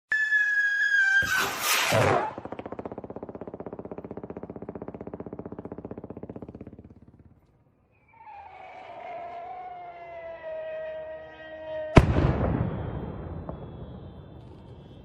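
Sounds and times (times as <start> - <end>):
firework whistle: 0.1 - 2.9, 7.9 - 15.0
rapid pulsing buzz: 2.0 - 7.7
firework bang: 12.0 - 14.9.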